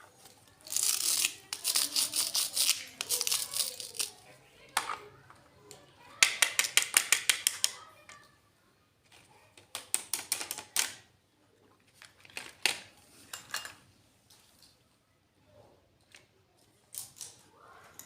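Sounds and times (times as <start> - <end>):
toy kitchen pieces clicking: 0.2 - 8.3, 9.1 - 11.1, 11.9 - 13.8, 16.9 - 18.0.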